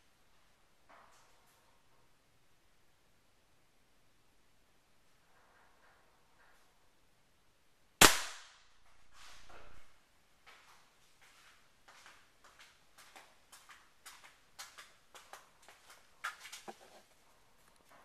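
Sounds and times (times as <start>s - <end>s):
pellet rifle shot: 8.0s - 8.7s.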